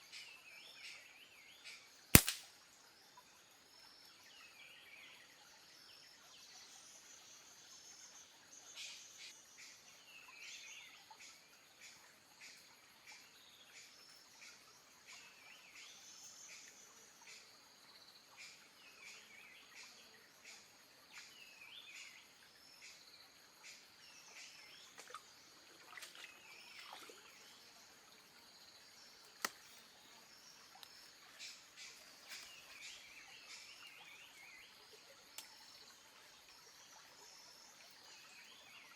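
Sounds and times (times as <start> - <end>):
sharp click: 2.2 - 2.5.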